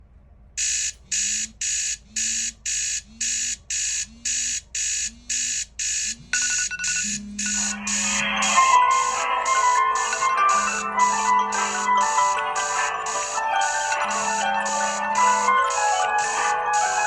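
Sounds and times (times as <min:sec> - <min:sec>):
high-pitched alarm beeping: 0:00.6 - 0:17.0
melodic alarm tone: 0:06.4 - 0:17.0
low buzz: 0:07.0 - 0:12.3.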